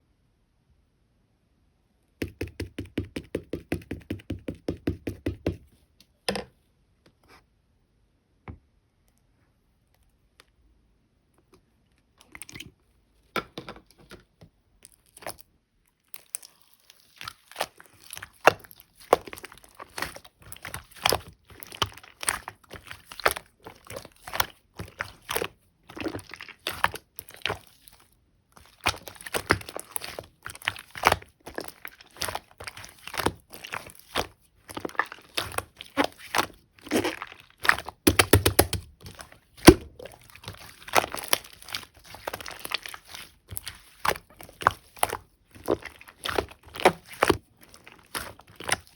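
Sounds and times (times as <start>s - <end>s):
slime kneading sticky clicks and pops: 37.7s - 39.0s.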